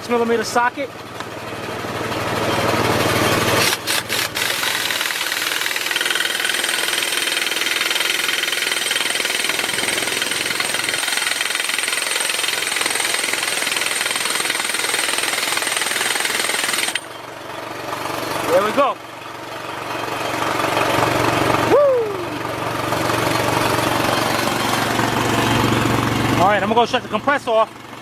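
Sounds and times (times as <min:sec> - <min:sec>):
impact wrench hammering: 0:03.6 - 0:17.2.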